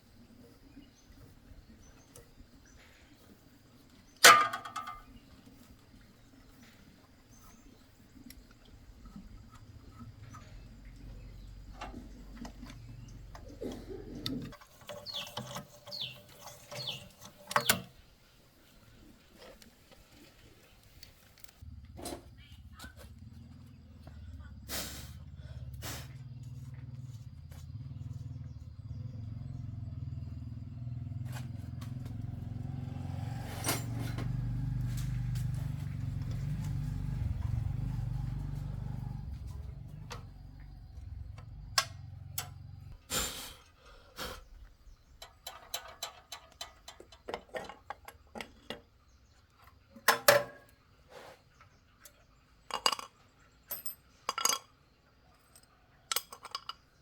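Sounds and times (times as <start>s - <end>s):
metallic clinks and knocks: 45.2s - 48.8s, 52.7s - 54.8s, 55.4s - 57.0s.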